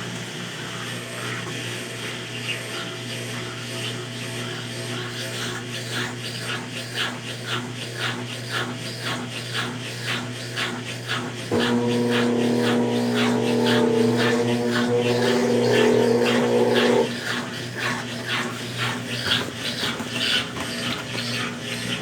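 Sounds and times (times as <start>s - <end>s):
water swishing in washing machine: 0.0s - 22.0s
motor hum: 11.4s - 22.0s
loud droning hum: 11.5s - 17.2s.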